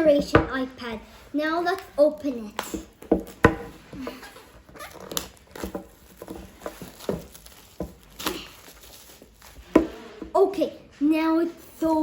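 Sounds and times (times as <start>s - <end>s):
box and wrapping being opened: 2.6s - 10.4s.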